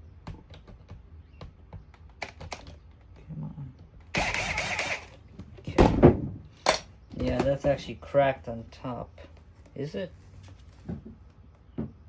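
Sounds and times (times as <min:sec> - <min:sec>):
plastic parts clicking and tapping: 0:01.8 - 0:03.2, 0:06.6 - 0:07.6
power drill running: 0:04.1 - 0:05.3.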